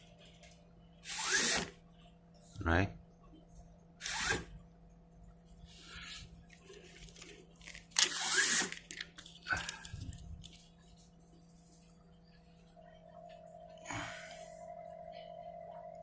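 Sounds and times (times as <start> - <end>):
faint electrical hum: 0.0 - 16.0
paper crinkling and rustling: 6.5 - 10.9.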